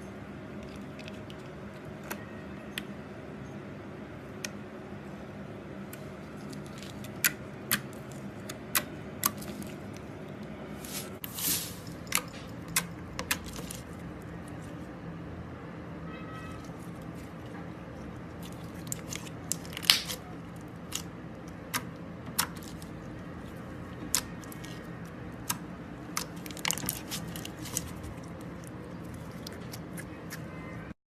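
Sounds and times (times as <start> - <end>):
slime popping and crackling: 18.5 - 20.2, 25.4 - 29.8.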